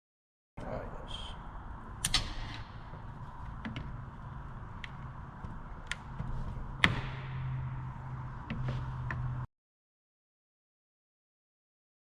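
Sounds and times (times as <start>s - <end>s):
steady low hum: 0.6s - 9.5s.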